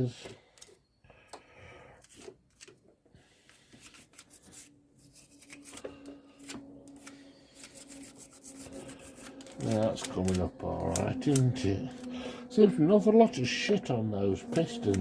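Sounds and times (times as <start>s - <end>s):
toothbrush scrubbing metal: 6.4s - 12.3s.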